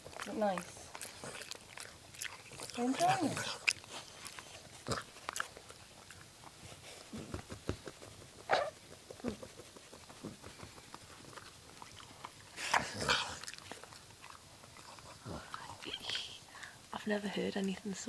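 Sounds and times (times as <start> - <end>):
dog chewing on plastic: 0.0 - 15.9
dog snorty grunts: 2.6 - 5.2, 12.6 - 13.5.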